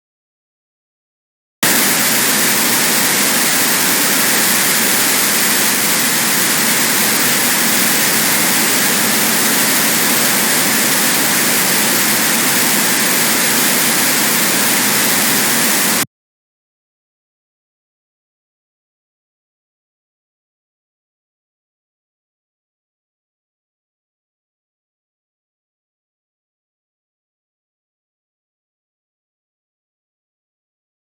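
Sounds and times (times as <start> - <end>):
harsh static noise: 1.6 - 16.1.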